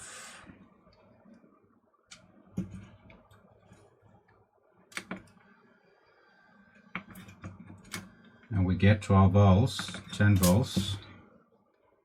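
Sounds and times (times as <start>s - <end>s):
faint clicks and taps of probes: 6.7s - 8.1s.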